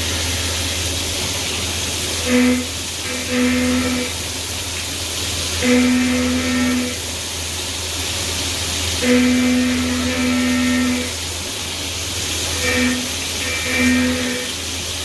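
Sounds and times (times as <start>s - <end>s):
milling machine hum and hiss: 0.0s - 15.0s
end mill cutting tone: 9.0s - 11.2s, 12.4s - 14.7s.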